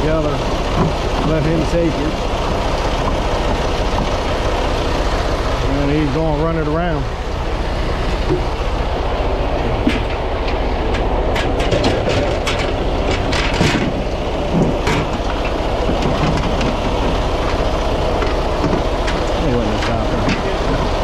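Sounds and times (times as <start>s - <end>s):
diesel engine idling: 0.0s - 21.0s
metallic clicks and clanks: 9.7s - 20.8s.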